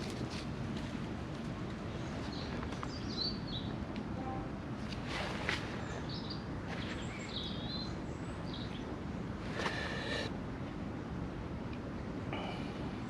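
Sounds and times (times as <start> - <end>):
outdoor background hum: 0.0 - 13.0
small birds chirping: 2.0 - 3.8, 5.7 - 10.3
rustling scrape: 4.9 - 5.8.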